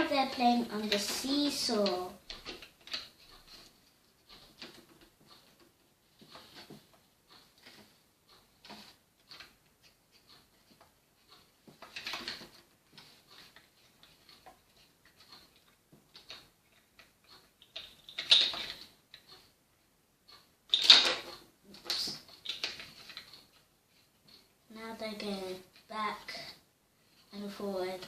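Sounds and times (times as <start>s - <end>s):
plastic toys clicking and tapping: 0.0s - 19.5s, 20.3s - 28.0s
plastic clatters: 17.6s - 18.9s, 20.7s - 23.5s.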